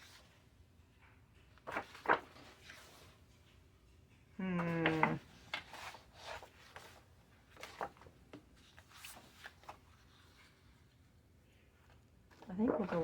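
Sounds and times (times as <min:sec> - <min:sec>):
paper rustling and sliding: 0:01.6 - 0:03.2, 0:04.9 - 0:10.6
person humming: 0:04.4 - 0:05.3.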